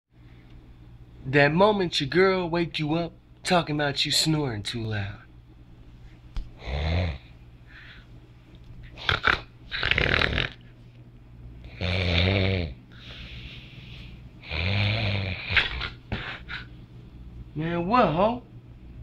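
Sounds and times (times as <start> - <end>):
man snoring: 6.6 - 7.2, 9.0 - 10.6, 11.7 - 12.8, 14.4 - 15.8
faint breaths: 7.2 - 8.2, 12.9 - 14.4.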